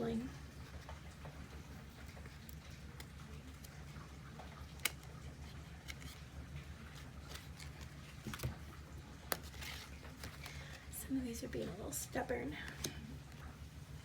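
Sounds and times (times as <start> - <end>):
low steady hum: 0.0 - 14.0
cards being handled: 4.7 - 6.3, 6.9 - 10.9.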